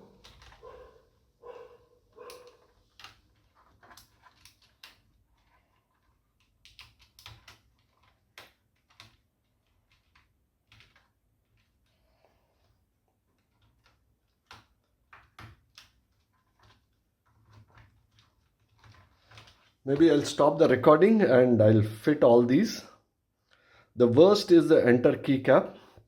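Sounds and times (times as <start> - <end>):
dog barking: 0.6 - 2.7.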